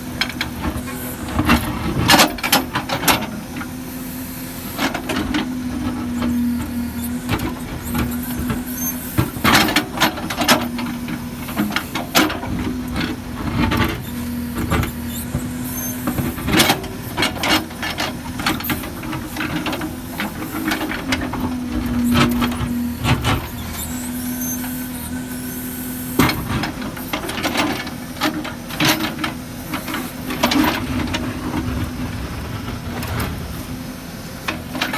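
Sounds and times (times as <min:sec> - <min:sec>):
backhoe engine drone: 0:00.0 - 0:34.9.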